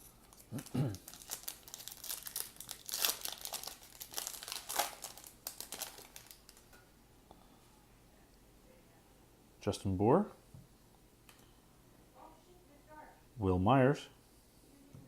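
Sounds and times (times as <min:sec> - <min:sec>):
foil wrapper crinkling: 0:00.2 - 0:06.7.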